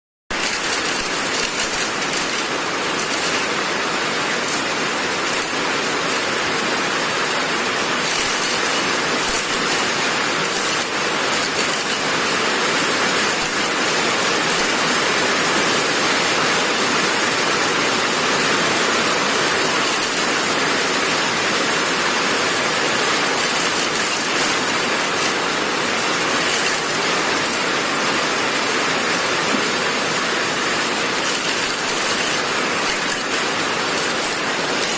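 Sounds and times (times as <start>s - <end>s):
machine running: 0.3s - 6.3s, 7.8s - 14.9s, 22.1s - 28.6s, 29.3s - 34.9s.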